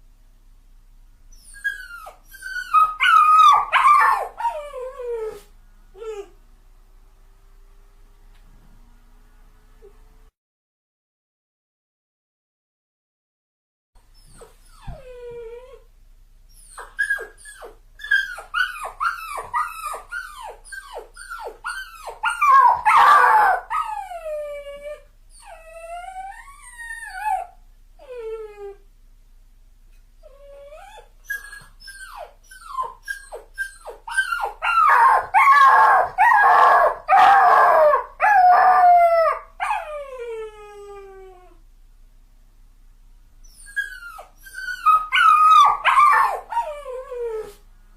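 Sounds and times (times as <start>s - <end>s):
dog whimpering: 1.3s - 6.4s, 14.2s - 15.9s, 16.5s - 28.8s, 30.2s - 41.6s, 43.4s - 47.6s
dog wailing: 1.4s - 5.4s, 16.6s - 28.8s, 30.3s - 41.6s, 43.5s - 47.6s.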